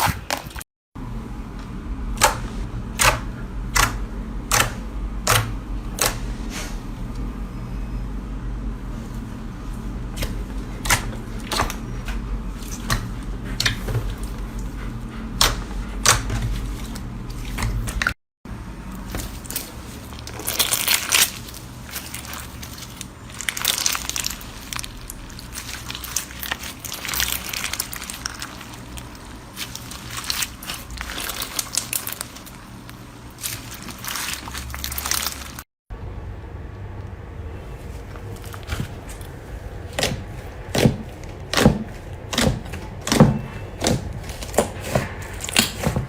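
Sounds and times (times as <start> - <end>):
slime crackling and popping: 19.1 - 35.6.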